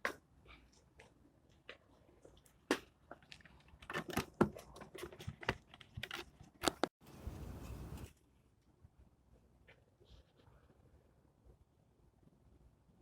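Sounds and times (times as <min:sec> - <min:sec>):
short rustle: 0:07.0 - 0:08.1.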